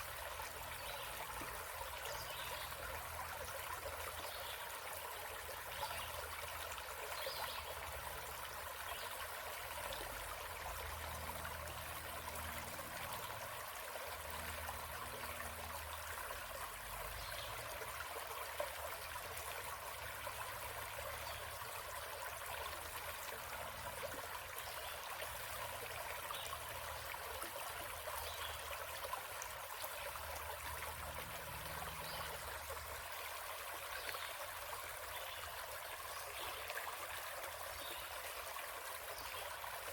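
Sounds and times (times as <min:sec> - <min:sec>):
stream trickling over stones: 0:00.0 - 0:39.9.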